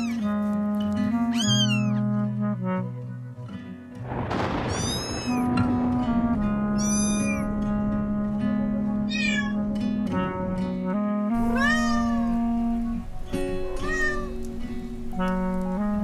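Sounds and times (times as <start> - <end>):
cat meowing: 0.0 - 0.2, 1.3 - 2.0, 4.7 - 5.5, 6.8 - 7.5, 9.1 - 9.6, 11.4 - 12.8, 13.7 - 14.6
background music with held notes: 0.0 - 16.0.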